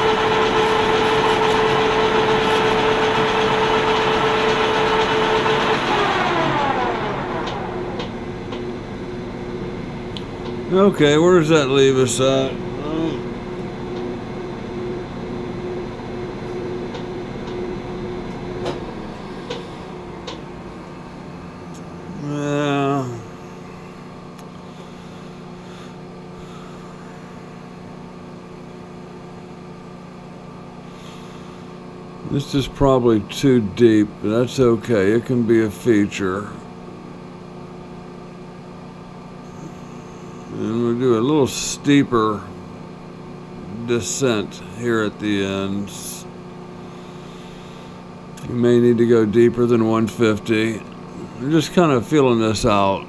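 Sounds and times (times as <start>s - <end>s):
metal lathe whining: 0.0s - 9.4s
machine tool electric hum: 0.0s - 53.0s.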